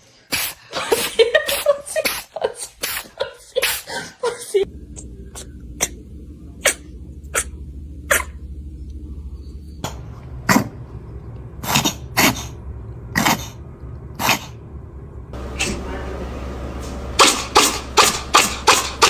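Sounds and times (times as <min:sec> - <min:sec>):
cats sneezing: 0:00.3 - 0:04.2, 0:06.6 - 0:08.4.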